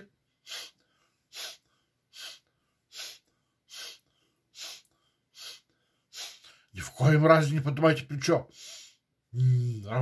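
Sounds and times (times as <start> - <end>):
man sharp noisy inhalations: 0.3 - 6.7, 8.5 - 9.2.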